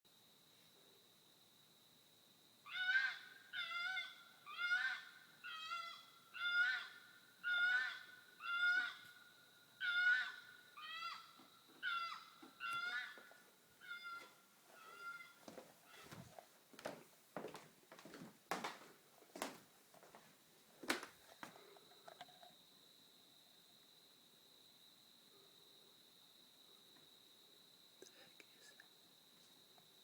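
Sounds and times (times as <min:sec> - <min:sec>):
wild animal calling: 0:02.7 - 0:16.2.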